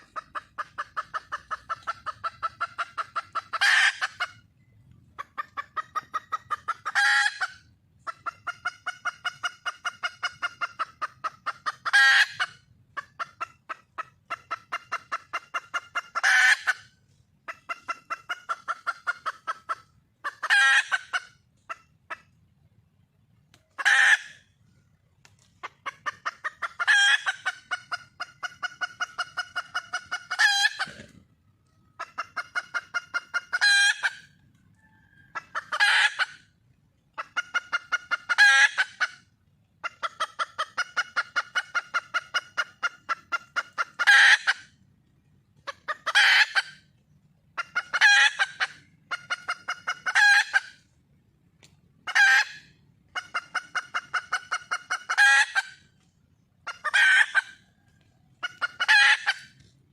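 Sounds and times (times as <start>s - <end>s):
hen squawk: 0.0s - 4.4s, 56.6s - 57.6s, 58.4s - 59.6s
hen clucking: 0.0s - 59.9s.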